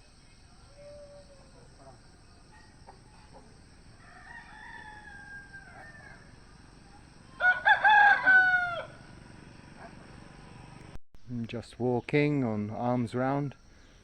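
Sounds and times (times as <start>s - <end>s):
rooster crowing: 4.0s - 9.3s.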